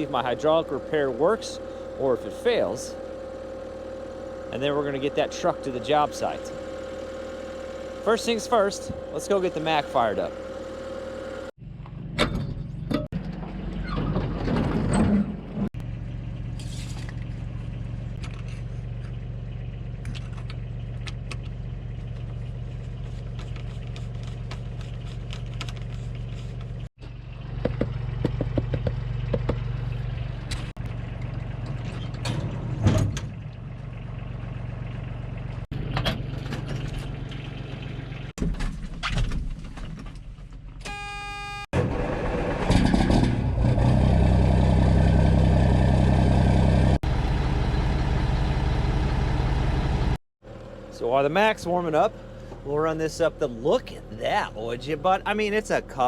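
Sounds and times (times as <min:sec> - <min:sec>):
diesel truck engine idling: 0:00.0 - 0:11.5, 0:27.1 - 0:38.3, 0:45.8 - 0:56.0
steady buzzing tone: 0:40.9 - 0:41.7.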